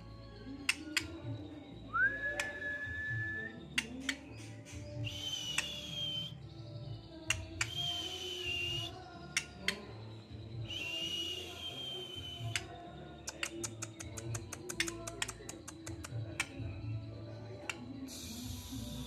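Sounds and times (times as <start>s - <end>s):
bird sharp clicks: 0.6s - 1.2s, 3.8s - 5.9s, 7.3s - 8.7s, 9.3s - 9.8s, 12.4s - 16.6s, 17.6s - 17.9s
bird whistling song: 0.7s - 15.4s.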